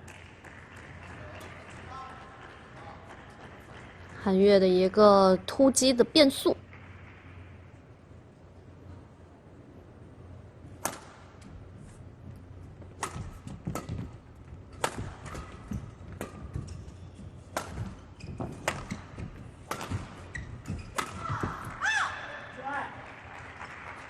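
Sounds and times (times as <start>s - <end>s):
rackets hitting shuttlecock: 10.7s - 11.5s, 12.5s - 22.7s
shoe squeaks: 16.6s - 19.4s, 20.0s - 22.0s.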